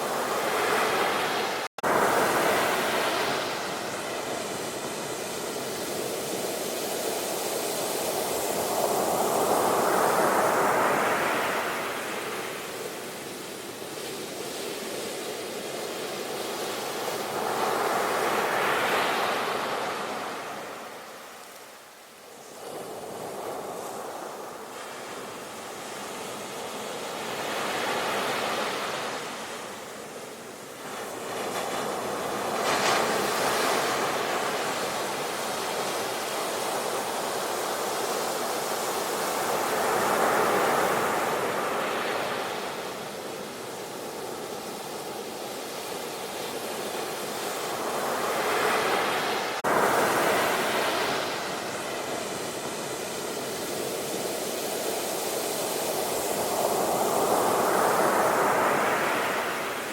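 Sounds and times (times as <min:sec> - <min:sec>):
sea waves breaking: 0:00.0 - 0:12.8, 0:30.8 - 0:59.9.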